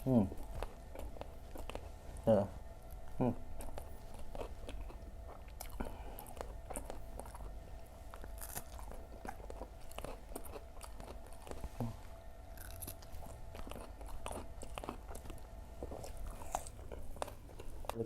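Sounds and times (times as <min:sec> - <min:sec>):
mouth sounds: 0:03.1 - 0:03.5
crunching of crispy fried food: 0:03.6 - 0:18.0.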